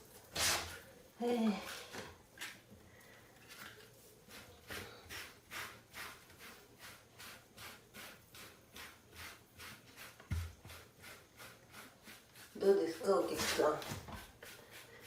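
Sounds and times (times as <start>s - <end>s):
brush strokes through fur: 4.0s - 15.0s.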